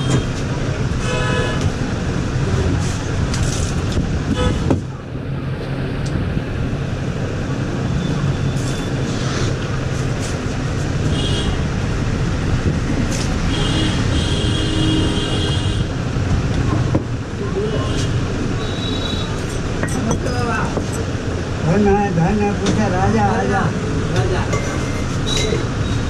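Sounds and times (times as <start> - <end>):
vehicle horns: 0.0 - 0.3, 1.0 - 1.7, 4.3 - 4.8, 11.0 - 11.7, 13.4 - 15.9, 17.6 - 19.4
road traffic noise: 0.0 - 26.0.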